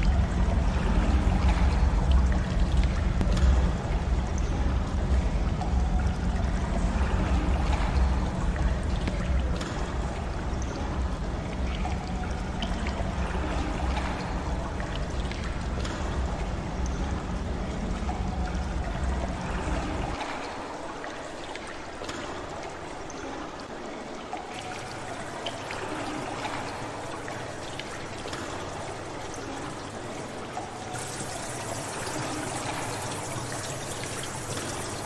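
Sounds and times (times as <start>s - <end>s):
small water drips: 0.0s - 35.0s
water trickling: 0.0s - 35.0s.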